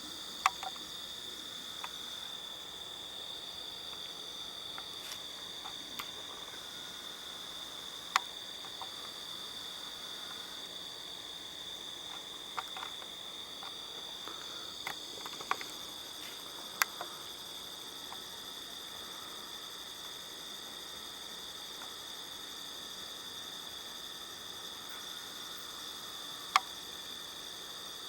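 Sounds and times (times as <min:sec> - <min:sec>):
crickets chirring: 0:00.0 - 0:28.0
sharp clicks: 0:00.4 - 0:00.9.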